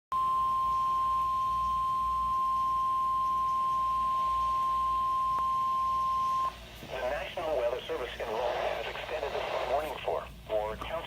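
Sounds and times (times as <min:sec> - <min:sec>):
steady high alarm tone: 0:00.1 - 0:06.6.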